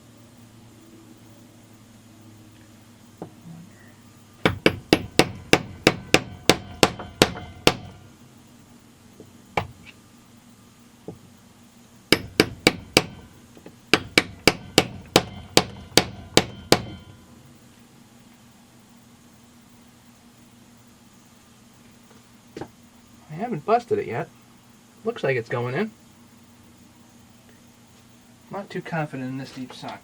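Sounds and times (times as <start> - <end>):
hammer tapping metal: 4.4 - 8.0, 12.1 - 17.2.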